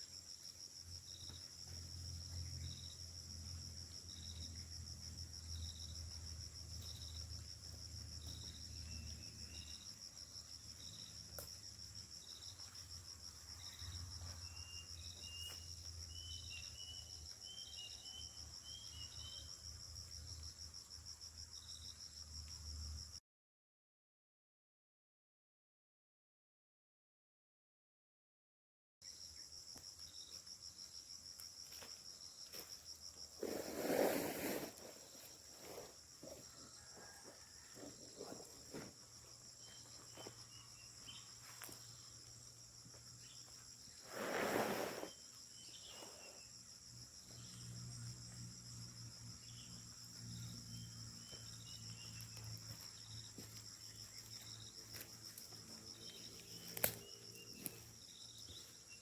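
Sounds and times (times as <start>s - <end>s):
insects chirring: 0.0s - 23.2s, 29.0s - 59.0s.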